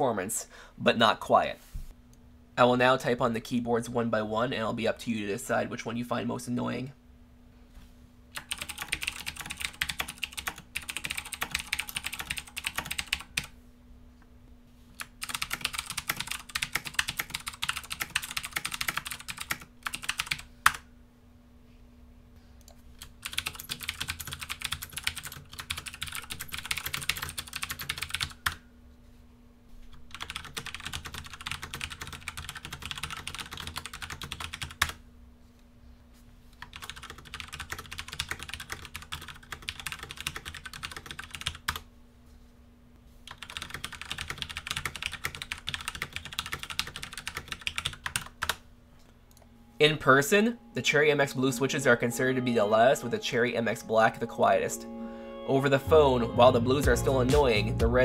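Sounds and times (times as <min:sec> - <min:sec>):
mechanical keyboard typing: 0:08.4 - 0:13.5, 0:15.0 - 0:20.8, 0:23.0 - 0:28.6, 0:30.1 - 0:35.0, 0:36.6 - 0:41.8, 0:43.3 - 0:48.6.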